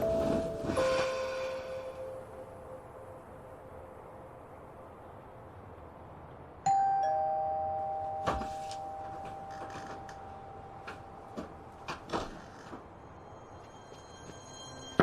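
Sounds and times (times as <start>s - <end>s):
two-tone doorbell chime: 0.0s - 2.5s, 6.7s - 11.8s, 13.1s - 15.0s.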